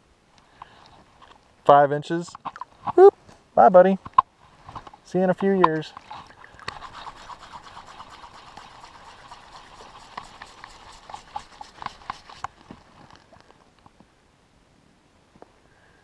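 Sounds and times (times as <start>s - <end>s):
water splashing and trickling: 5.0s - 13.5s.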